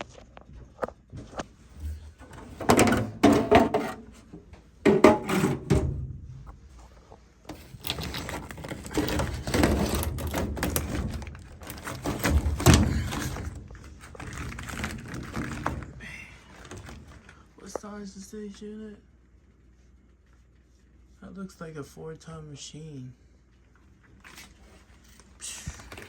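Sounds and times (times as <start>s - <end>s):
rustling and scraping: 0.0s - 17.9s
thunks and knocks: 2.4s - 4.0s, 4.9s - 6.3s.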